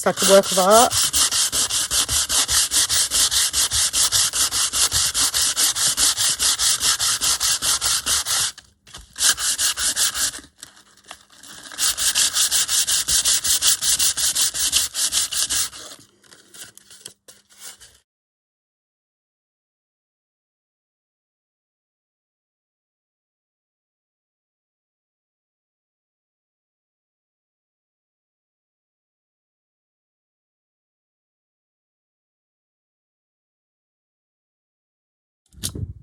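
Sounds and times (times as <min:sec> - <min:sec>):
sandpaper rubbing on paper: 0:00.0 - 0:10.6, 0:11.3 - 0:18.0.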